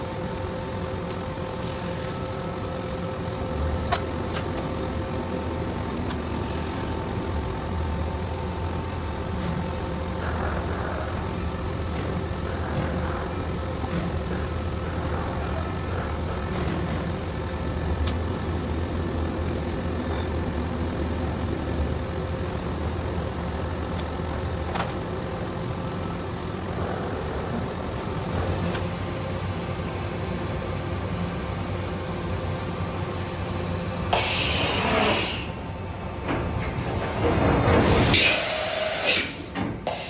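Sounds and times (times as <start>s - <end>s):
machine hum: 0.0s - 40.0s
compressed air hiss: 34.1s - 35.6s, 37.8s - 40.0s.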